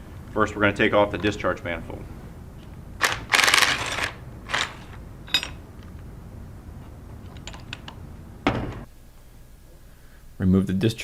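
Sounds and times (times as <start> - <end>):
impact gun rattling: 3.0 - 5.6
metal clinks: 3.0 - 5.7.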